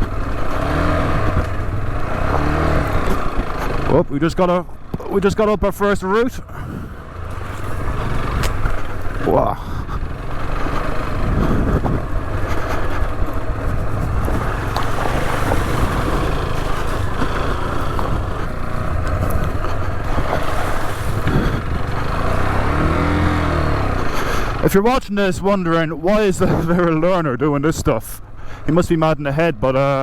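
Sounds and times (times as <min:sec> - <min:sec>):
motorcycle engine running: 0:00.0 - 0:30.0
wind noise on microphone: 0:11.1 - 0:14.6, 0:18.0 - 0:21.9.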